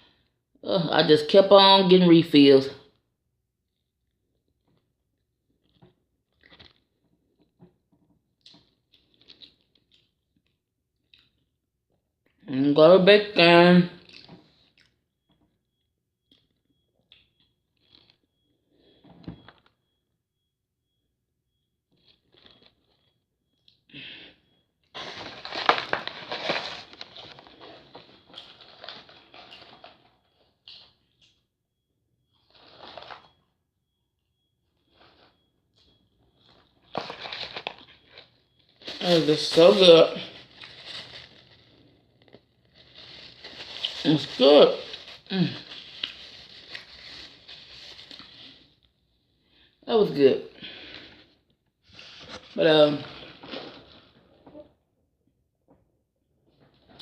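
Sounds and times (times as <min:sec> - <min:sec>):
chewing food with crunches: 0:03.7 - 0:07.7, 0:08.3 - 0:11.6, 0:14.0 - 0:19.7, 0:21.9 - 0:23.9, 0:26.8 - 0:31.4, 0:44.8 - 0:47.4
chewing clicks and smacks: 0:14.0 - 0:15.0, 0:16.2 - 0:18.2
crunching and rustling: 0:25.0 - 0:30.2, 0:36.5 - 0:48.7.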